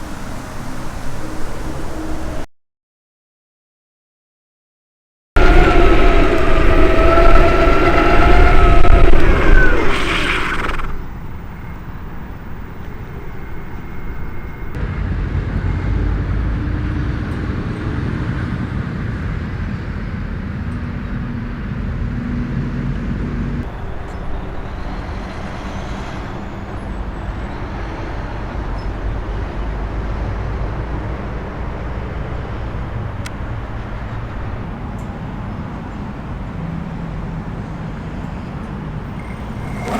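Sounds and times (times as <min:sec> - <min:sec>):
wavering motor whine: 0:05.4 - 0:15.9, 0:39.0 - 0:39.9
wheels rolling on pavement: 0:38.8 - 0:39.9.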